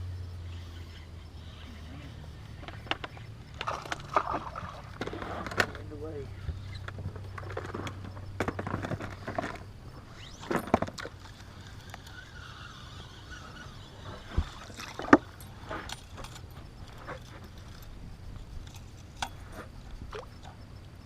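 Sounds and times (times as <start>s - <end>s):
knocks and clicks of gear: 2.4s - 12.1s.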